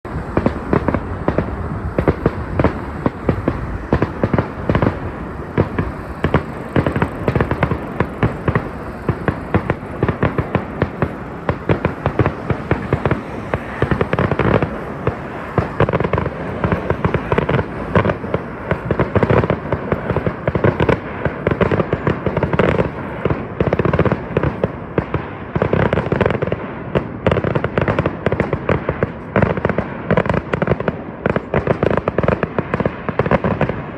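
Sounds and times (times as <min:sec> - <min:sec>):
fireworks barrage of bangs: 0:00.0 - 0:33.9.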